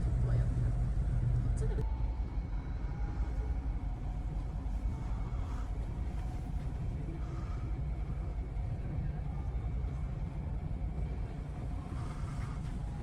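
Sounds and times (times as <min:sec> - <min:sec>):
faint steady hum: 0:00.0 - 0:13.0
low engine rumble: 0:00.0 - 0:13.0.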